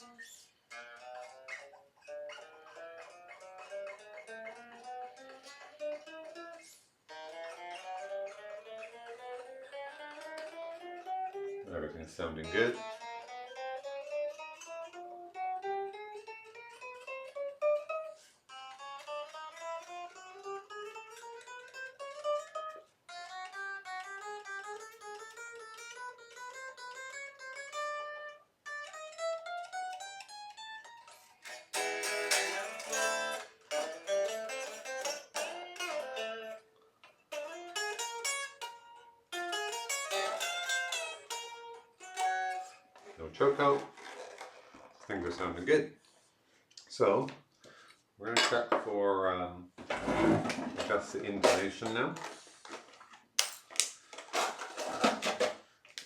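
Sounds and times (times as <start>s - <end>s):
electric guitar notes and chords: 19.0s - 36.6s, 37.3s - 42.8s.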